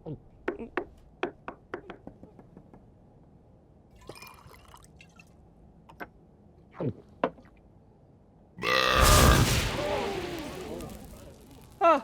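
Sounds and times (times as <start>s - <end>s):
liquid hissing splash: 8.9s - 11.8s.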